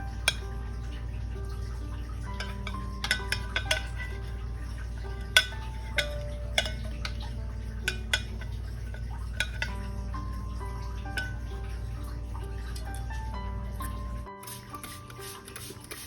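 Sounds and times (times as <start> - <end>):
soft background music: 0.0 - 16.0
tools clinking against glass: 2.4 - 4.2, 5.2 - 9.8.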